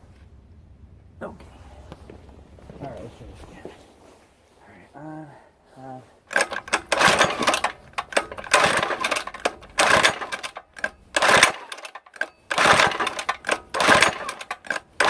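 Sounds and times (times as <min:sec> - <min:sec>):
recoil starter pulls: 0:06.2 - 0:15.0.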